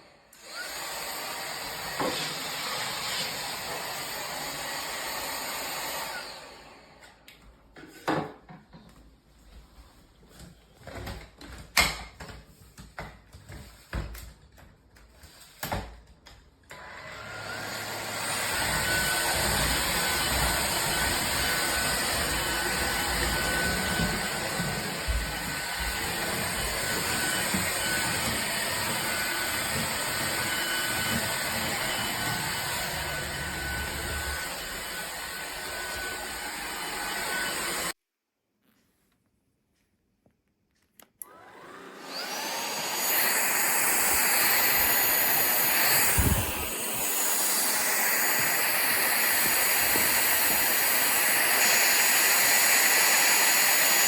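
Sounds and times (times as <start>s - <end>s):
stick vacuum running: 16.7s - 37.9s, 41.2s - 54.0s.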